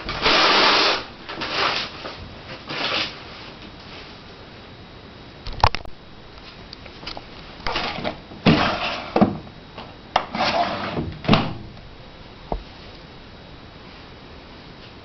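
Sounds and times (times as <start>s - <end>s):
short scrape or rustle: 10.3s - 11.0s.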